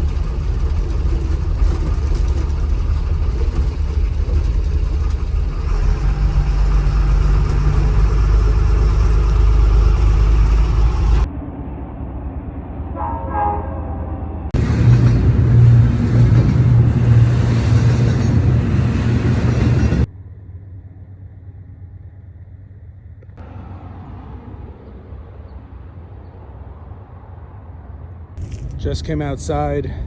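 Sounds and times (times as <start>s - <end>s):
heavy vehicle rumble: 0.0s - 20.1s
horn-like tone: 12.9s - 14.5s.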